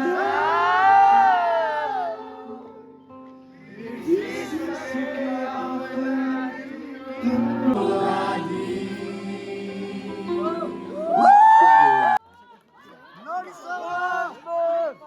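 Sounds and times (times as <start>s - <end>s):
voices singing together: 0.0s - 2.9s, 3.6s - 12.2s.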